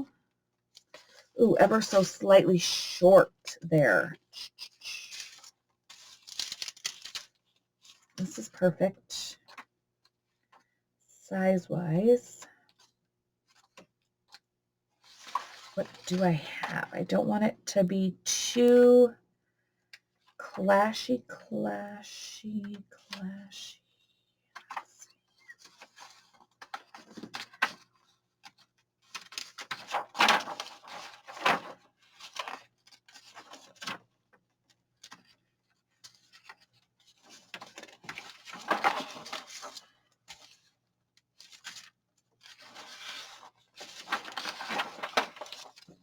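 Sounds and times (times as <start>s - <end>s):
paper rustling and crinkling: 4.4s - 8.4s, 12.7s - 16.2s, 24.5s - 46.0s.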